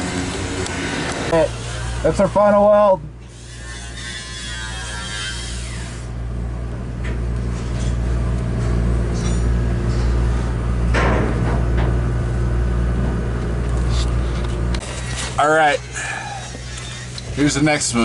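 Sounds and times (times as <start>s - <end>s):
low mechanical hum: 0.0s - 18.0s
metallic knocks and clanks: 10.9s - 12.0s.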